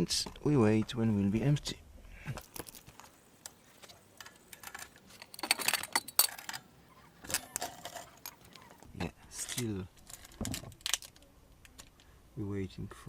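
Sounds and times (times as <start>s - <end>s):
small metal parts clinking: 4.2s - 8.8s, 9.4s - 12.0s.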